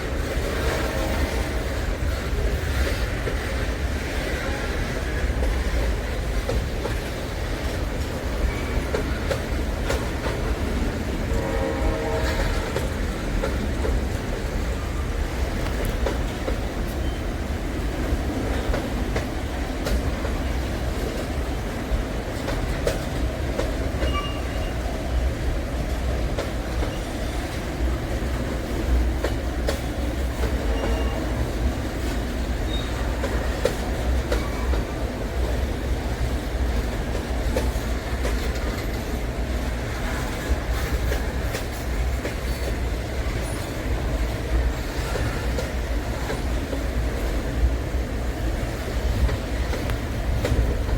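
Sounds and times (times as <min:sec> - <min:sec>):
freight train cars rumbling: 0:00.0 - 0:50.9
wheel clatter over rail joints: 0:25.4 - 0:50.9
wheel squeals: 0:32.6 - 0:33.1.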